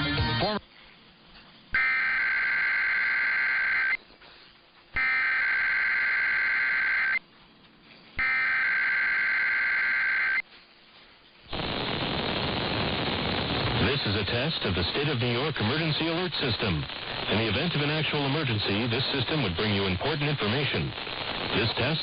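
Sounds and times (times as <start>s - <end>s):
steady hiss: 0.0s - 22.0s
buzzing digital data tones: 1.8s - 4.0s, 5.0s - 7.2s, 8.2s - 10.4s.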